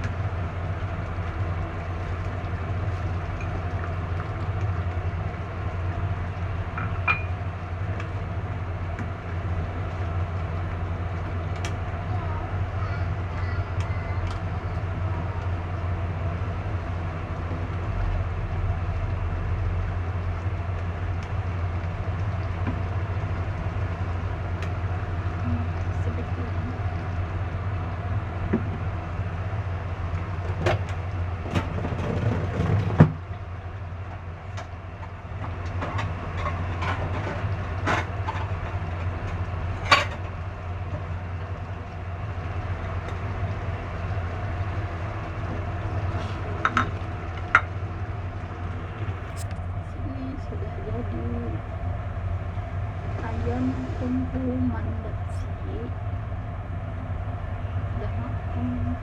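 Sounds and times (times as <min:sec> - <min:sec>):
stove low rumble: 0:00.0 - 0:59.0
metal cookware clinks: 0:07.0 - 0:07.4.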